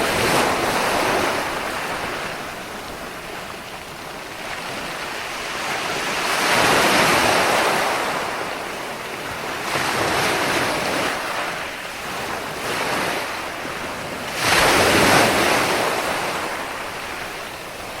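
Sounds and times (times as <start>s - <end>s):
sea waves breaking on shore: 0.0s - 18.0s.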